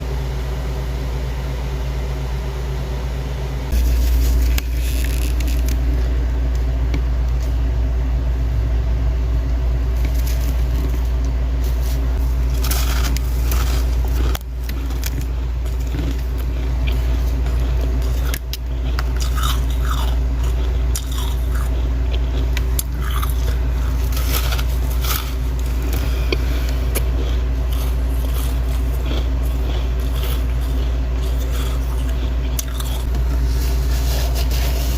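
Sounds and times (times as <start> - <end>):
steady low hum: 0.0 - 34.9
crunchy frost being chewed: 3.7 - 6.3, 9.9 - 34.9.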